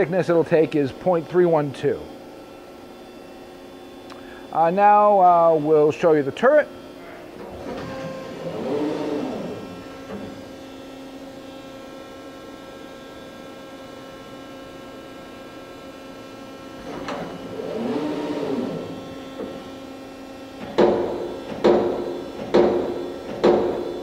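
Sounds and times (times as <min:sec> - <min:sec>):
electrical hum: 0:00.0 - 0:24.0
drive motor whining: 0:06.9 - 0:10.8, 0:16.8 - 0:19.8.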